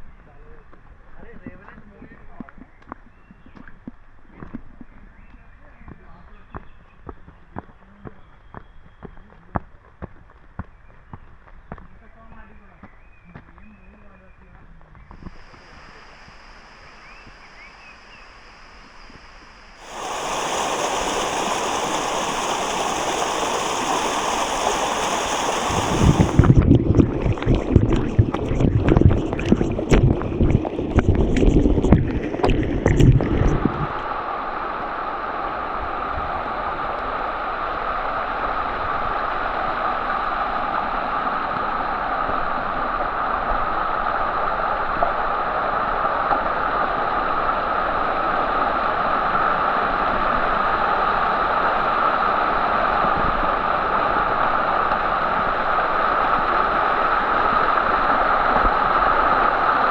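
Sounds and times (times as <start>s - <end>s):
water rushing down stone steps: 19.8s - 33.6s
knocks and low rumble: 26.3s - 33.8s.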